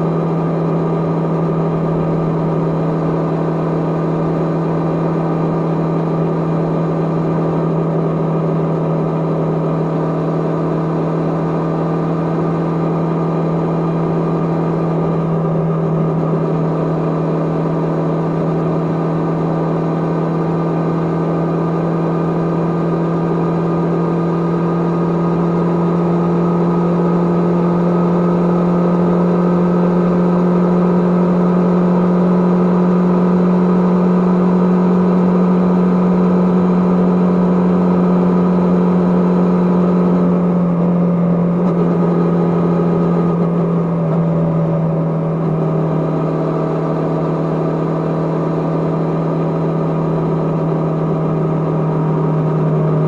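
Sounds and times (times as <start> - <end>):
motorcycle engine running: 0.0 - 53.0.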